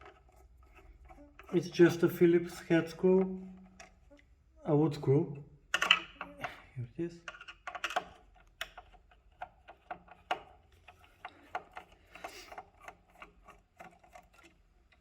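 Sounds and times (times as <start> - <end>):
screwdriver clicking and tapping: 7.3 - 14.5.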